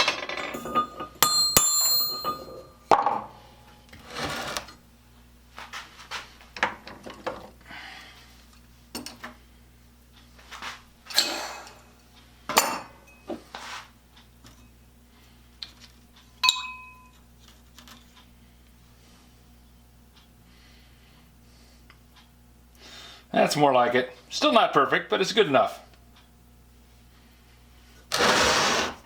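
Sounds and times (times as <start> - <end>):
metal tools clinking: 0.0 - 2.7
ringing metal clink: 0.2 - 2.8, 16.4 - 17.2.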